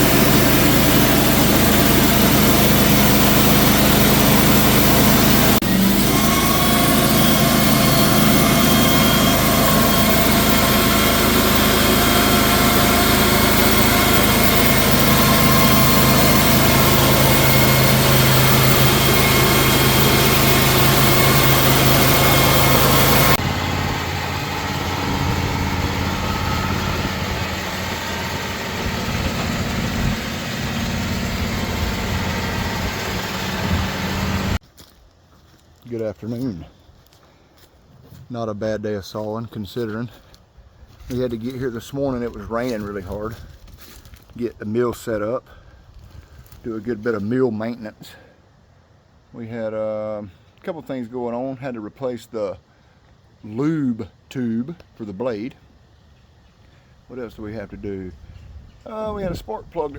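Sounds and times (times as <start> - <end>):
sawmill engine running: 0.0 - 34.6, 58.9 - 59.9.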